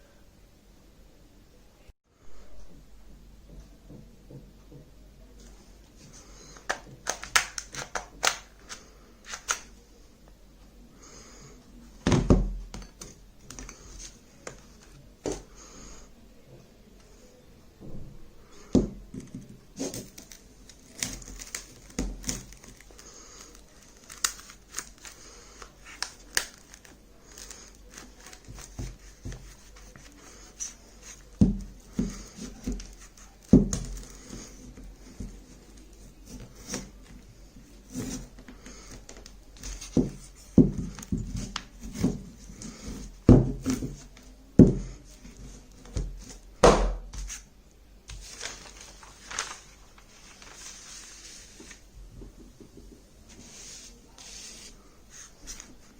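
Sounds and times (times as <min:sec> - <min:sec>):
crinkling and tearing: 0:19.8 - 0:31.3, 0:48.1 - 0:51.8.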